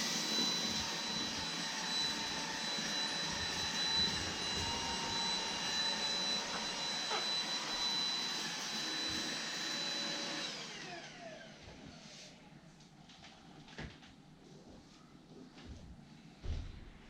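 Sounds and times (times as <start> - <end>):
stick vacuum motor whine: 0.0 - 12.0.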